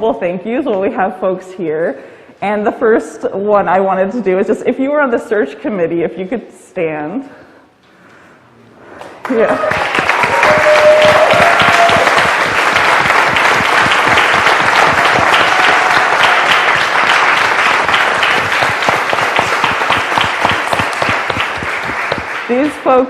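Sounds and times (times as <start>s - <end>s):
crowd applauding: 9.1s - 22.9s.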